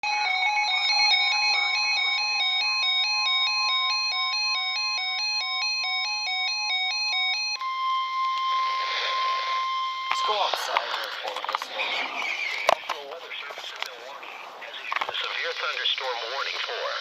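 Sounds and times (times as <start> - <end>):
warbling electronic alert beeps: 0.0 - 10.7
steady high alert tone: 0.0 - 13.0.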